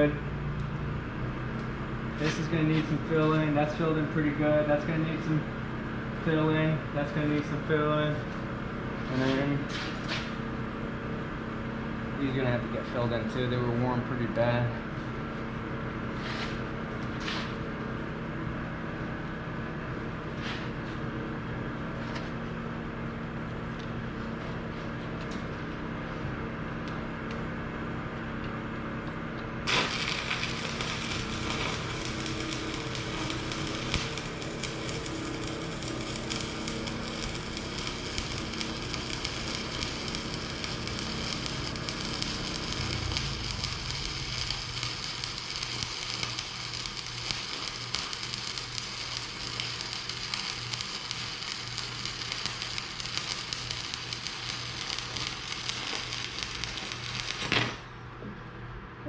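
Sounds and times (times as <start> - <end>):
welding arc crackling: 29.6 - 57.9.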